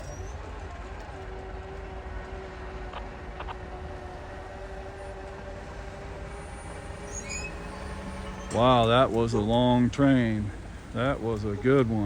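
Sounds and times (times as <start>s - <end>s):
freight train cars rumbling past: 3.7s - 12.0s.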